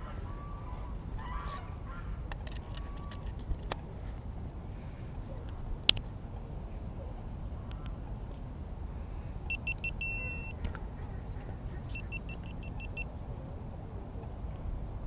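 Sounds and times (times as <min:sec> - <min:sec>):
steady low rumble: 0:00.0 - 0:15.0
electronic device beeps: 0:09.5 - 0:10.6, 0:11.9 - 0:13.1.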